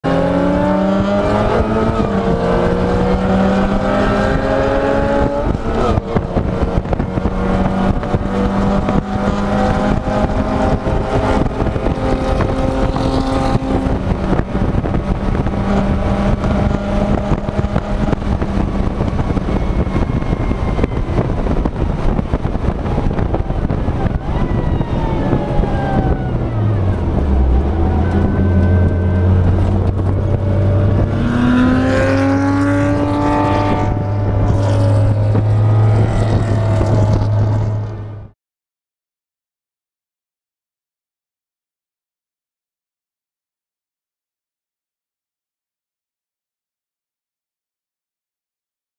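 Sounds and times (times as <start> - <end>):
car engine running hard: 0.0 - 38.3
wind and road noise: 0.0 - 38.4.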